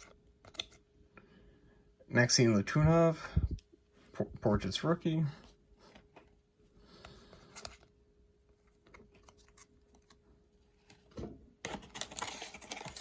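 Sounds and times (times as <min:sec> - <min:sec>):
packaging crinkling and clicking: 0:11.6 - 0:13.0.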